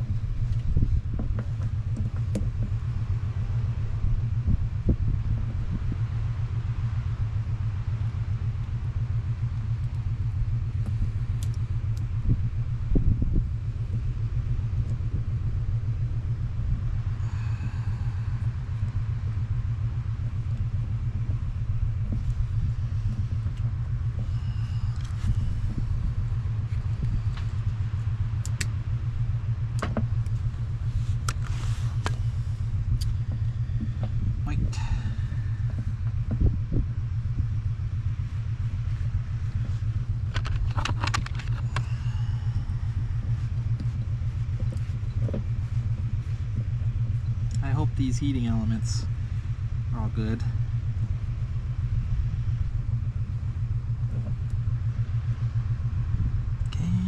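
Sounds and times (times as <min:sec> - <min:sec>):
engine idling: 0:00.0 - 0:57.0
small clicks and knocks: 0:00.5 - 0:02.8, 0:40.3 - 0:41.9.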